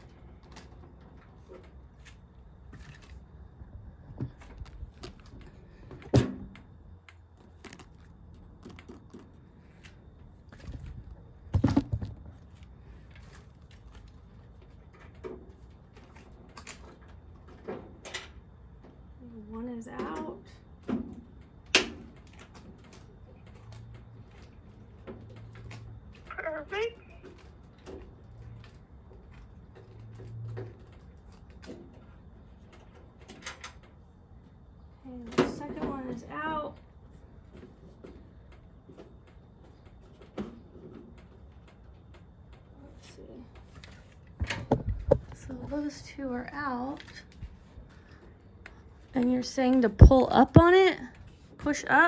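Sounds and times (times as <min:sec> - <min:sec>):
knocks and rattles: 0:10.5 - 0:12.6, 0:43.6 - 0:46.0.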